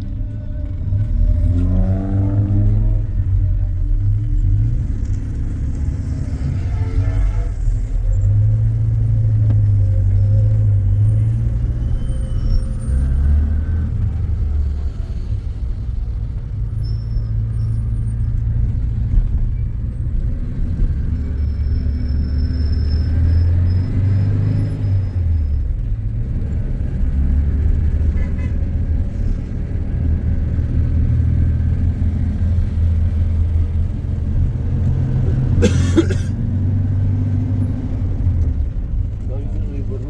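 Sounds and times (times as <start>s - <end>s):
low vehicle rumble: 0.0s - 40.0s.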